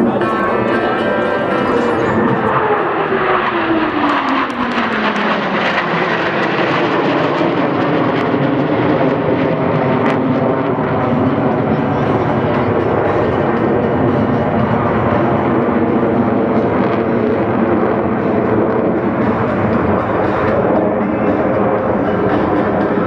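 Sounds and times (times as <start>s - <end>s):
falling pitch tone: 0.0s - 5.7s
jet roar: 0.0s - 23.0s.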